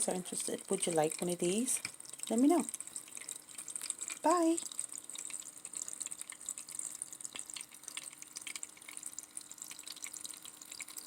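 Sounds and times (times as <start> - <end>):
faint pump hum: 0.0 - 11.0
water trickling and dripping: 0.0 - 11.0.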